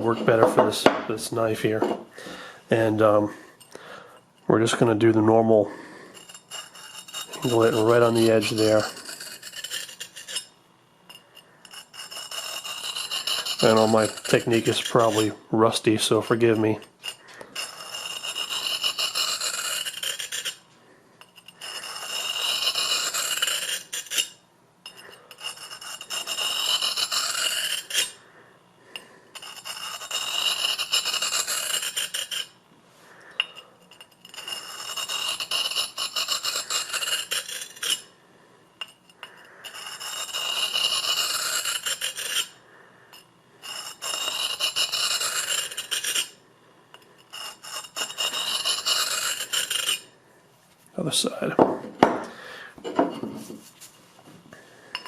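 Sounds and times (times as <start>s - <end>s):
knife rasping on sharpening stone: 6.1s - 15.4s, 16.0s - 28.2s, 29.0s - 32.6s, 33.4s - 38.1s, 38.8s - 50.1s, 52.8s - 53.8s.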